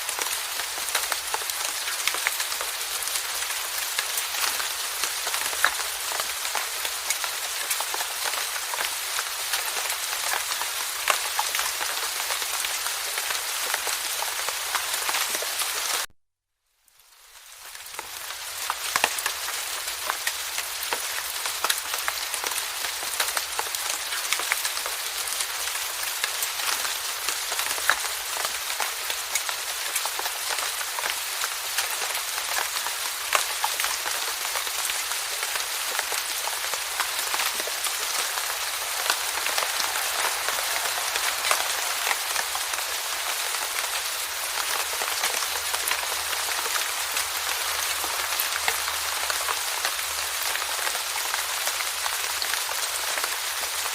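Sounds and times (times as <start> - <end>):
rain hissing: 25.4 - 53.8.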